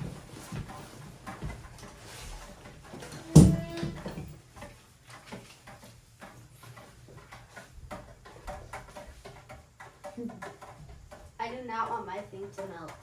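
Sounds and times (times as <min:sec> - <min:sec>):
small objects clicking and knocking: 0:02.9 - 0:13.0.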